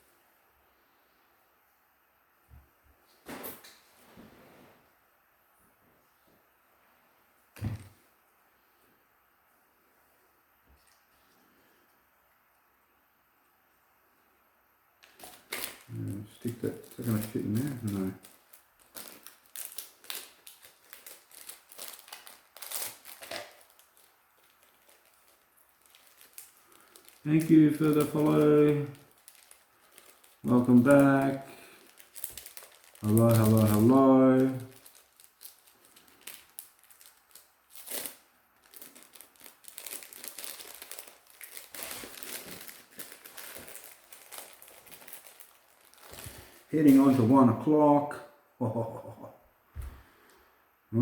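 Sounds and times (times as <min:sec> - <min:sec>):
plastic packaging crinkling: 0:15.0 - 0:47.7.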